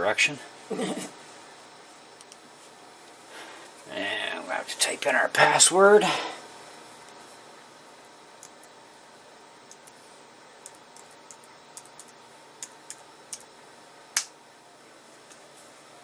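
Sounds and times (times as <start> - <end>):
computer keyboard keystrokes: 8.4 - 8.7, 9.7 - 10.0, 10.6 - 13.5.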